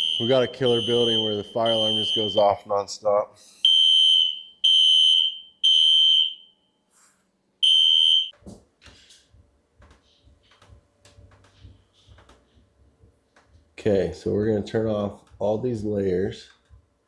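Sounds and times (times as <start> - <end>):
fire alarm beeping: 0.0 - 2.6, 3.6 - 6.7, 7.6 - 8.4.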